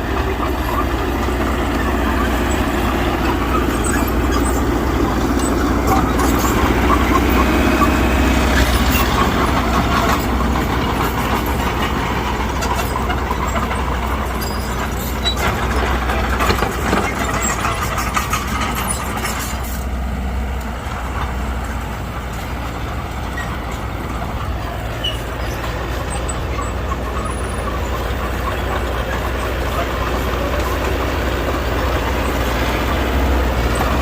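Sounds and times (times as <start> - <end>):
bulldozer diesel engine running: 0.0 - 34.0.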